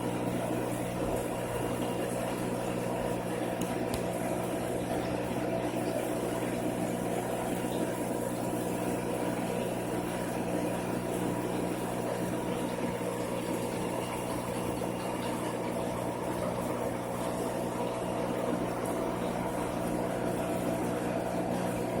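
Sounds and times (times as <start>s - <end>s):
aquarium pumps humming: 0.0s - 22.0s.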